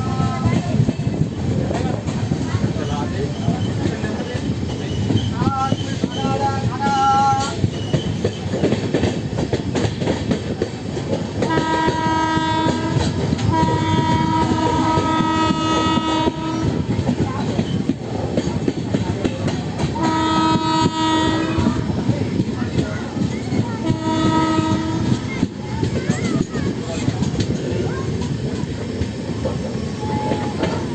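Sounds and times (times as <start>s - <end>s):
train wheels clattering over rails: 0.0s - 30.9s
locomotive horn blasts: 11.5s - 16.8s, 20.0s - 21.9s, 23.8s - 25.3s.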